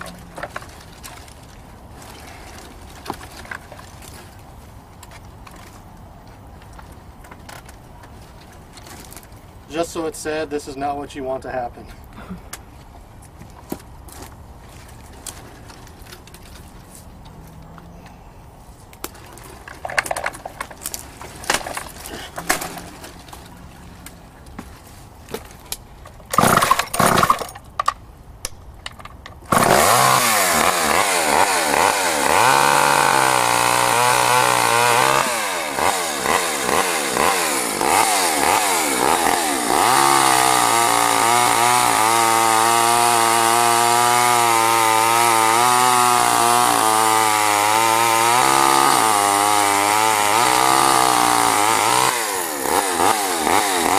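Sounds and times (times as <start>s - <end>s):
chainsaw revving: 26.4s - 27.4s, 29.5s - 53.9s.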